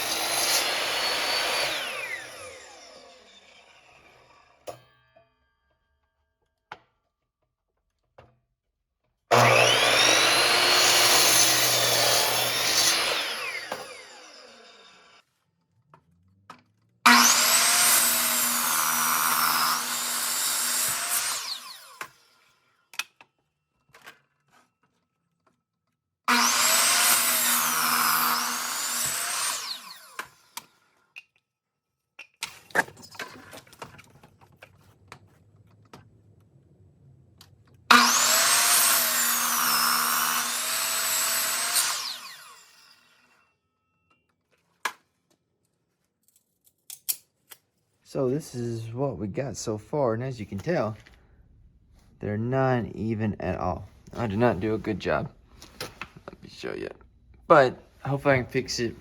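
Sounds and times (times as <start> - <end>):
power saw cutting wood: 0.0 - 4.8, 9.3 - 15.2, 17.1 - 22.7, 26.3 - 30.8, 37.9 - 43.4, 53.6 - 55.2.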